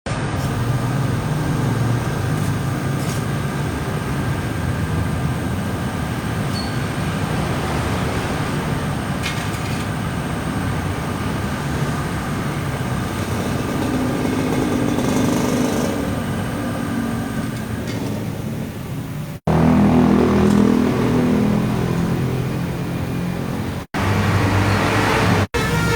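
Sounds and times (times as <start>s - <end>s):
road traffic engines: 0.1s - 25.9s
motorcycle engine: 0.2s - 25.9s.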